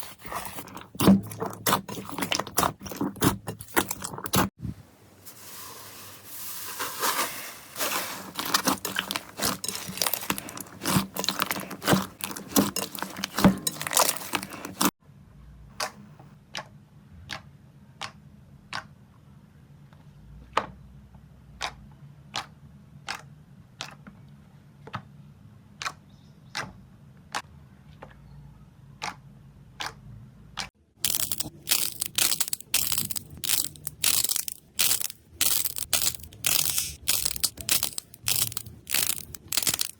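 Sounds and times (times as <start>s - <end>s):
slime crackling and popping: 0.0s - 4.6s, 7.8s - 14.9s, 31.0s - 39.9s.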